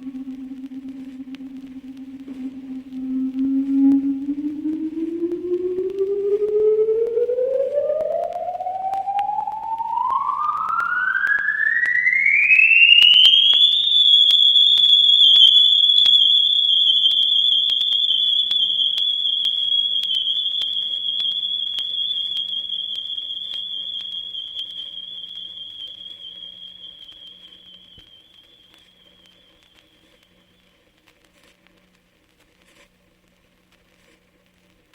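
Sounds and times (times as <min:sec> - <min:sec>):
faint low hum: 0:00.0 - 0:12.2
rising siren-like whistle: 0:00.0 - 0:30.7.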